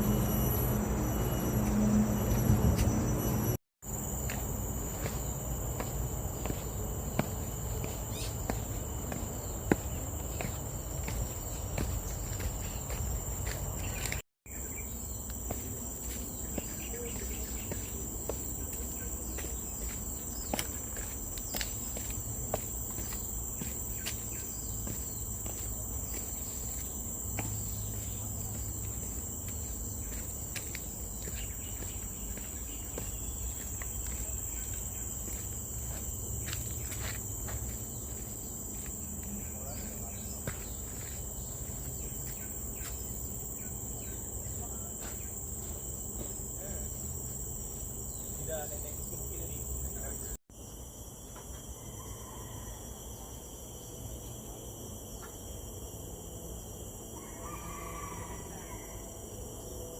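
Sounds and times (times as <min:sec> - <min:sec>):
insects droning: 0:00.0 - 0:59.9
footsteps on a trail: 0:00.3 - 0:47.0.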